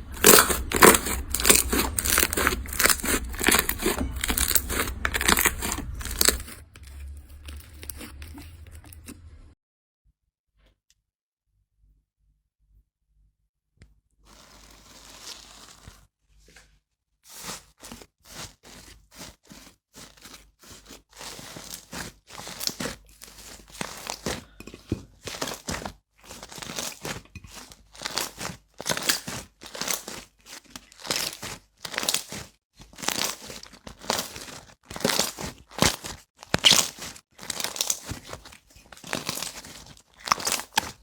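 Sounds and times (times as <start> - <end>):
slime squishing: 0.0 - 9.4, 17.3 - 41.0.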